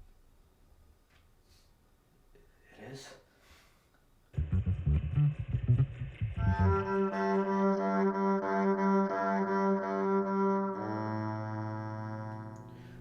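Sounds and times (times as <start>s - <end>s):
film score with held low notes: 4.3s - 13.0s.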